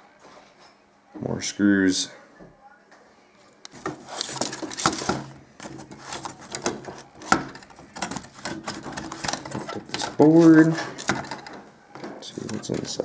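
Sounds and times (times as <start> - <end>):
screws and sheet metal rattling: 3.7 - 13.0.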